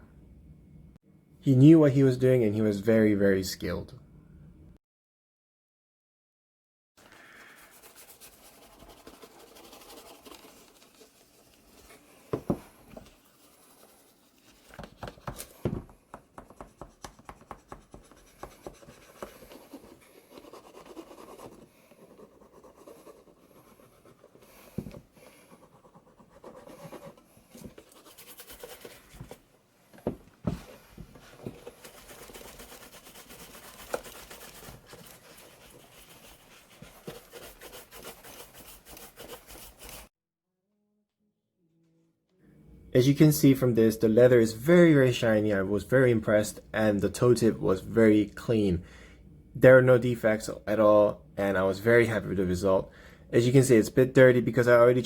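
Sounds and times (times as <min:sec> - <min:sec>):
brush rubbing on shoe leather: 0:07.4 - 0:12.1, 0:13.0 - 0:15.1, 0:16.6 - 0:29.4, 0:30.6 - 0:40.1.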